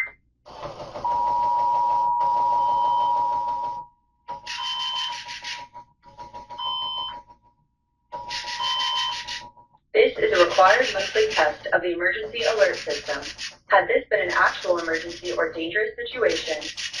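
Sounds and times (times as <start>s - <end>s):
two-tone alert alarm: 4.4s - 5.6s, 6.6s - 7.2s, 8.2s - 9.5s.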